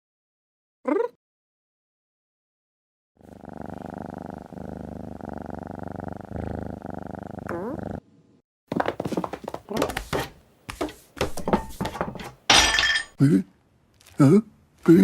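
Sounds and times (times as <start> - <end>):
cat purring: 3.2 - 8.0.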